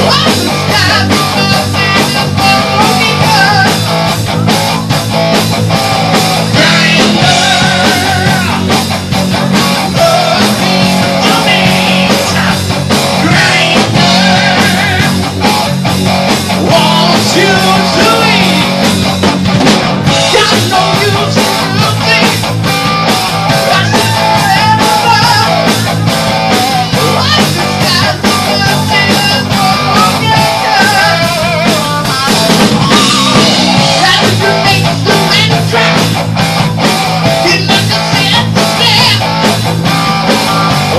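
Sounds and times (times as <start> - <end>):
person singing: 0.0 - 3.9, 6.5 - 8.7, 9.6 - 15.2, 16.6 - 18.8, 20.2 - 22.5, 23.5 - 36.2, 37.4 - 39.3
distorted electric guitars: 0.0 - 40.9
drum kit beat: 0.0 - 40.9.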